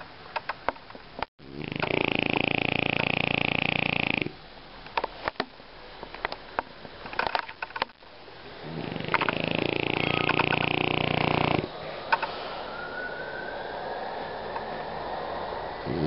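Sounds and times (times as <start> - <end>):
dog snoring grunt: 1.4 - 4.3, 8.6 - 11.7.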